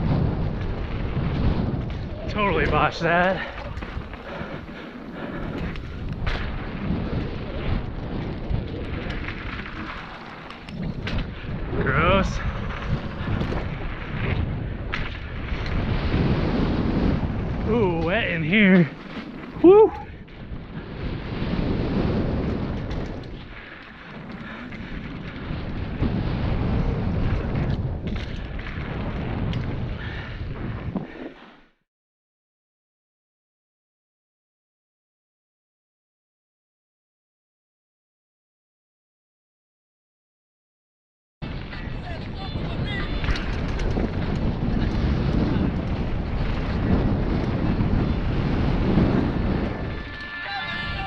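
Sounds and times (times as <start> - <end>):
wind buffeting microphone: 0.0 - 31.4, 41.4 - 51.0
bike tyres rumbling on dirt: 0.0 - 31.6, 41.4 - 51.0
bike clicks and knocks: 22.4 - 25.8, 27.3 - 29.8, 43.1 - 47.6.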